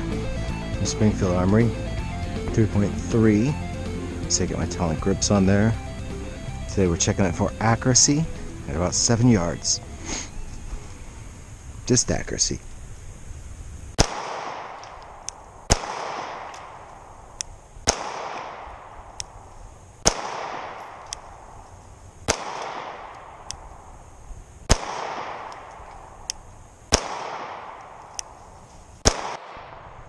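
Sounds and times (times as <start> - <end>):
faint sharp cracks: 13.9 - 23.7, 24.6 - 30.0
pistol shots with echo: 14.0 - 21.6, 22.3 - 23.9, 24.7 - 28.4, 29.0 - 30.0.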